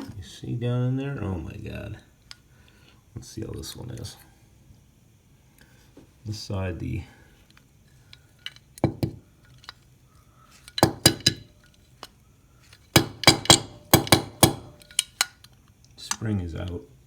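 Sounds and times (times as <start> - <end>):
metal parts clinking: 8.1 - 9.8, 10.5 - 16.3.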